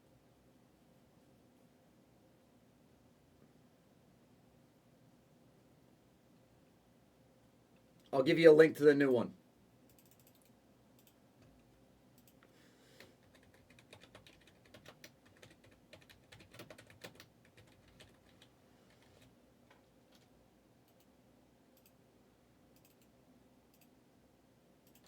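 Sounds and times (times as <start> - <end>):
typing on keyboard: 9.9 - 11.6, 12.2 - 20.3.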